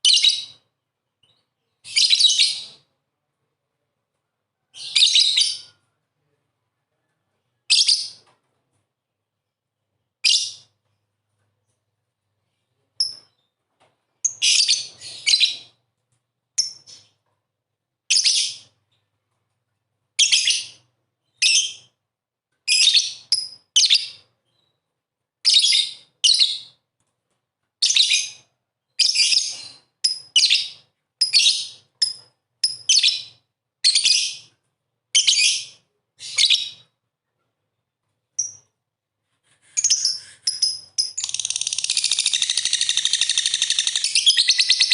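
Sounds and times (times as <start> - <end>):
lovebird chirping: 39.8 - 44.9.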